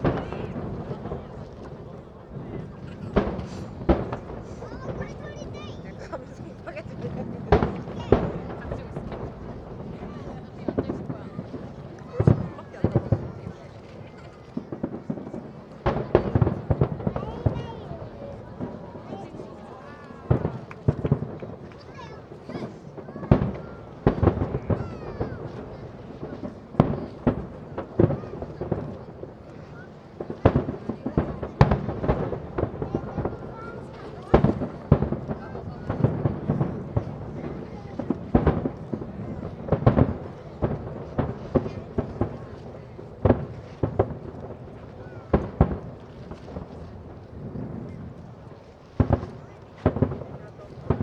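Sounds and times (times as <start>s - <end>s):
firework shells bursting: 0.0s - 5.2s, 30.0s - 48.2s
firework shells booming: 0.0s - 19.2s, 20.3s - 51.0s.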